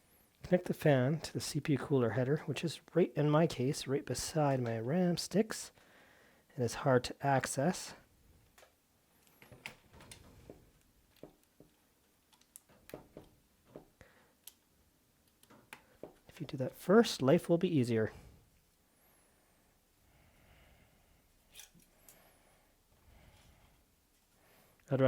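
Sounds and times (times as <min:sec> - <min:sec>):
small clicks and taps: 0:08.5 - 0:16.3.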